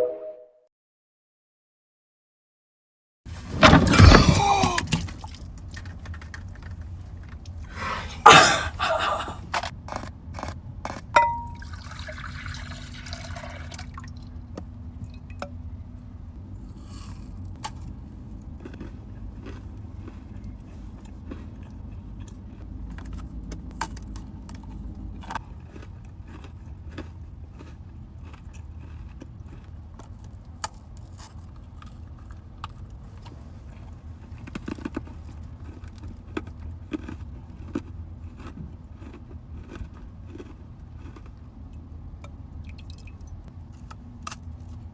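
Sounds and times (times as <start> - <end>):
low steady hum: 3.4 - 44.9
mouth and food sounds: 16.0 - 44.9.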